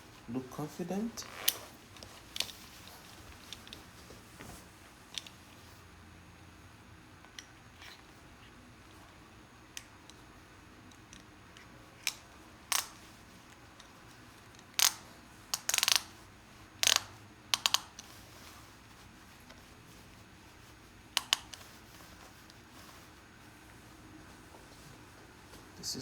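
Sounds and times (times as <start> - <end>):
metal belt buckle clicking: 1.2 - 3.8, 10.9 - 16.2, 16.8 - 18.2, 21.2 - 21.7.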